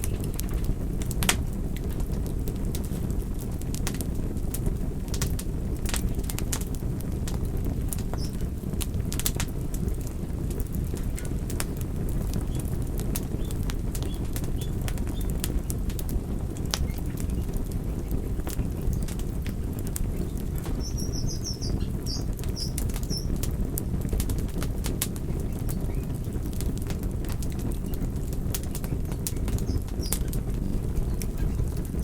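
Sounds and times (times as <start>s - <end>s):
campfire crackling and popping: 0.0s - 32.0s
low fluttering of flames: 0.0s - 32.0s
high chirps: 20.8s - 23.3s.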